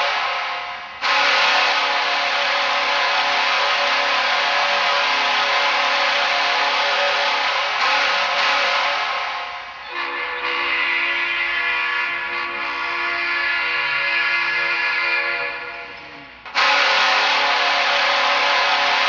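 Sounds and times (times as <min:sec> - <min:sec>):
arena goal horn blast: 0:01.0 - 0:15.9, 0:16.5 - 0:19.0
loud burst: 0:16.5 - 0:19.0.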